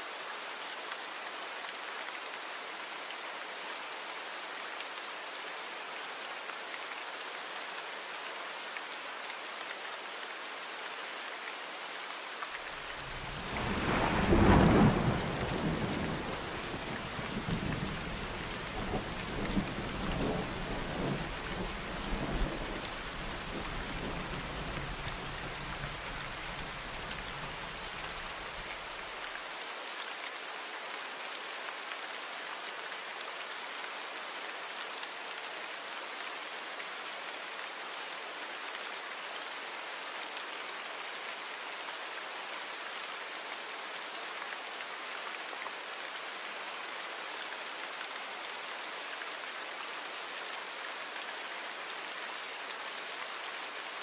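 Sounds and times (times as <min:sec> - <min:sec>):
steady rain falling: 0:00.0 - 0:54.0
thunder rumbling: 0:13.2 - 0:16.5.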